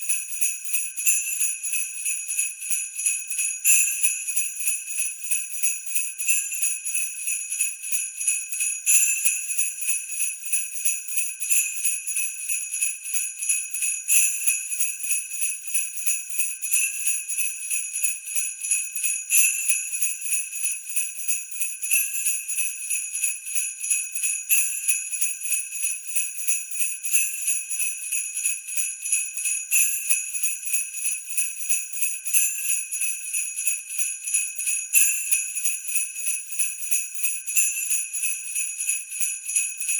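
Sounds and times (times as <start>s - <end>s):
sleigh bells jingling: 12.8s - 39.9s.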